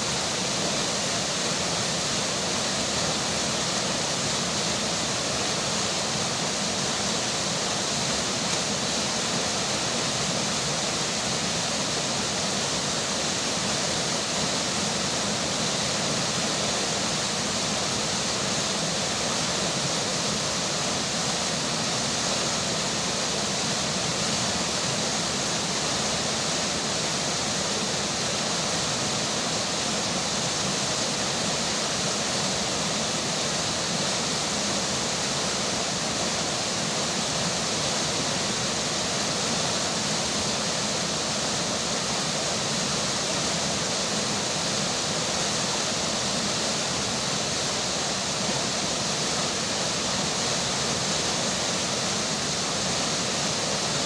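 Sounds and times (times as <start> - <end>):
rainfall: 0.0 - 54.0
river water rushing: 0.0 - 54.0.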